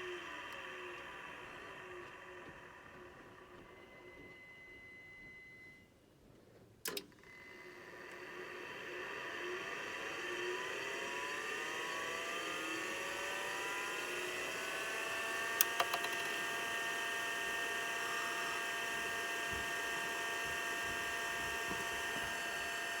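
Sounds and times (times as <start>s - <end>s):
hard drive spinning up whine: 0.0s - 5.8s, 7.3s - 23.0s
hard drive clicks: 15.5s - 16.6s.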